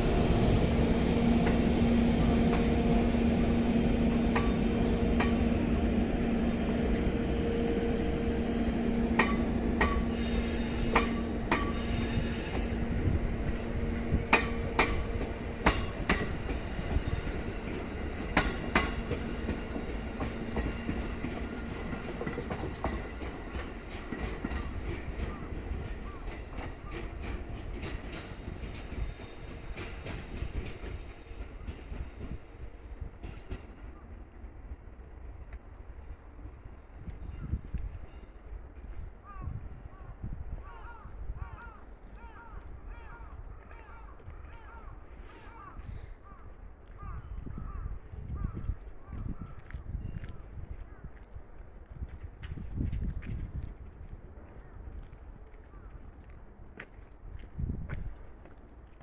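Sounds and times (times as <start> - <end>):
train hum: 0.0 - 59.0
wheels clacking over rail joints: 9.0 - 12.7, 14.2 - 32.4.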